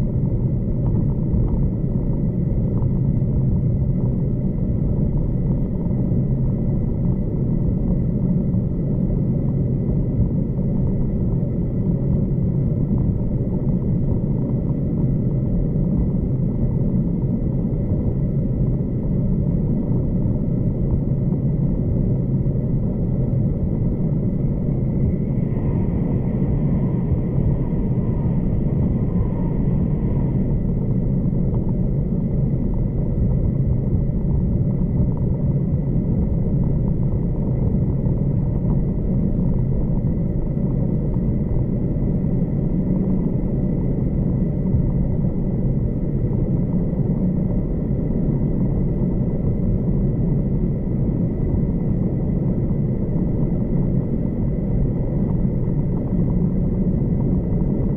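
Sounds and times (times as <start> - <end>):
faint wavering high noise: 18.5 - 57.9
train rumbling along track: 24.4 - 45.2.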